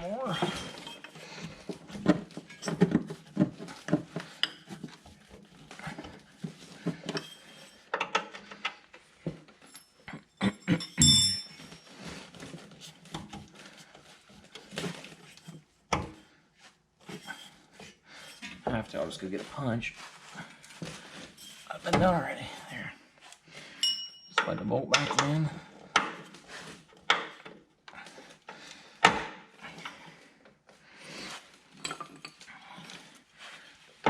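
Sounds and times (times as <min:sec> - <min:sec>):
metal knocks and clinks of tools: 0:00.3 - 0:04.8, 0:06.8 - 0:11.9, 0:23.8 - 0:26.3, 0:31.8 - 0:32.4.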